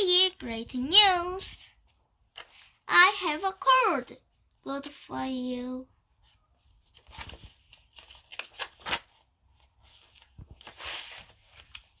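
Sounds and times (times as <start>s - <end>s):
rustling: 6.2s - 12.0s.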